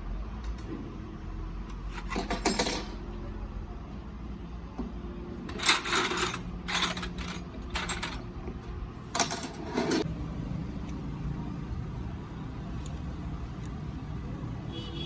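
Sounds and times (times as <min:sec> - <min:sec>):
metallic rattling: 0:05.5 - 0:08.2.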